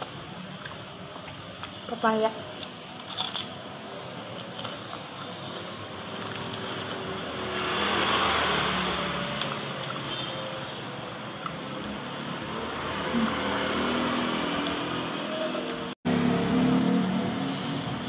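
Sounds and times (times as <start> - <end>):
steady background hum: 0.0 - 8.2
vehicle passing by: 6.0 - 18.0.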